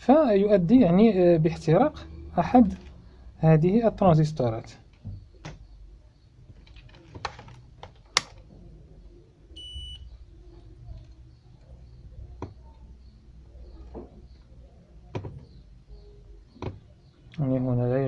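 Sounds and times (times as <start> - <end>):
multimeter beep: 9.6 - 10.1
clicks and taps of handling: 16.6 - 16.8.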